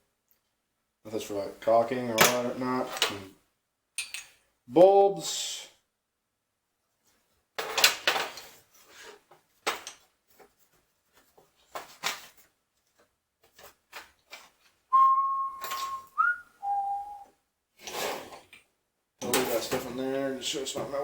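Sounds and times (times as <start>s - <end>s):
person whistling notes: 14.9s - 17.3s.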